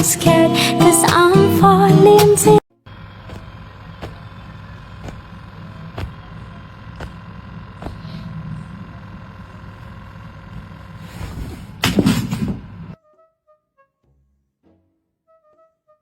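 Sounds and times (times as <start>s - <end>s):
vehicle rumble: 2.9s - 13.0s.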